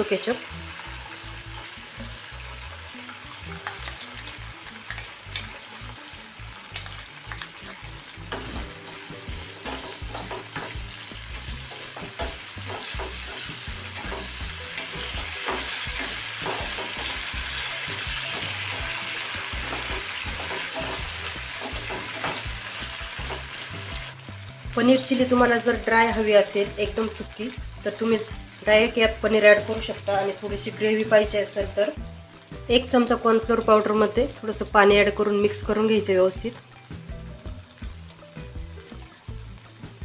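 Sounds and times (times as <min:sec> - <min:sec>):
vegetables sizzling in oil: 0:00.0 - 0:40.0
spatula scraping and tapping pan: 0:08.3 - 0:23.8.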